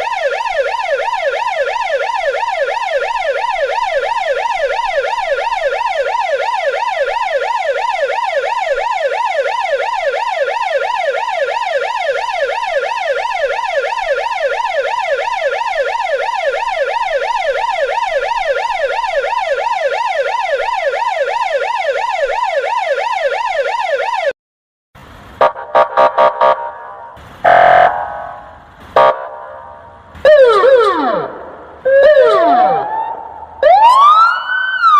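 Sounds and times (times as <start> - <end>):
gliding siren wails: 0.0 - 24.3, 25.4 - 34.9
police siren yelping: 0.0 - 24.3, 25.4 - 34.9
short quacking horn blasts: 25.4 - 29.7.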